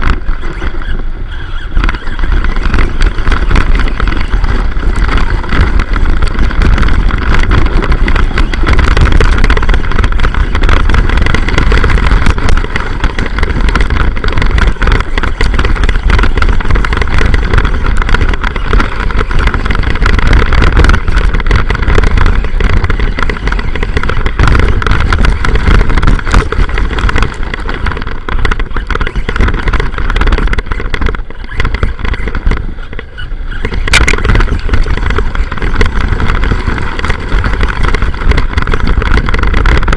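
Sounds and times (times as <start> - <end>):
electric rc car motor: 0.0 - 39.9
low rumble: 0.0 - 39.9
rattling and clicking: 0.0 - 39.9.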